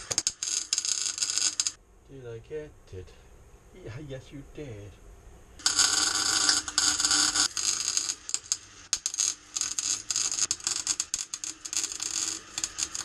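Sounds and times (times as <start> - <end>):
arc welder crackling: 0.0 - 1.8, 5.6 - 13.0.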